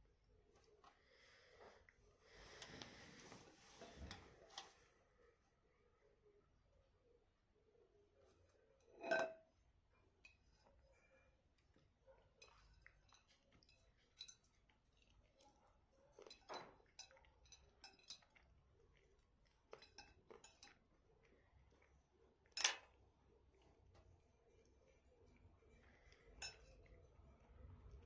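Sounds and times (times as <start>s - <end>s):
cutlery clinking on dishes: 8.9s - 9.4s, 16.2s - 18.4s, 19.7s - 20.8s, 22.5s - 23.0s, 26.4s - 26.9s.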